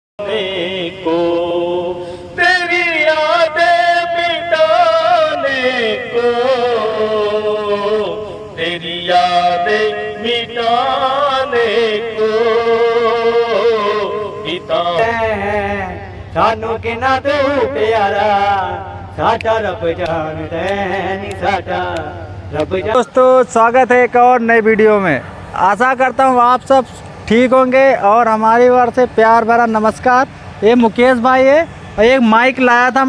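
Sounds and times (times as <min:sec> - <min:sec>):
person singing with vibrato: 0:00.2 - 0:23.2.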